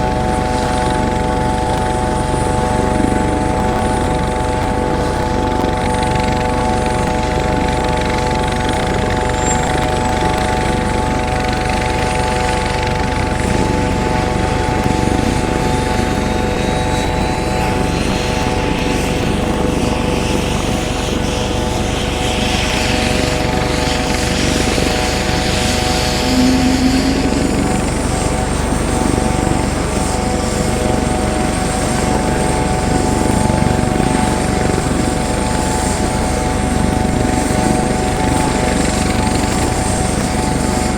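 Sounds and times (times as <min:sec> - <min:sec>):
helicopter engine and rotor rumble: 0:00.0 - 0:40.9
helicopter whine: 0:00.0 - 0:40.9.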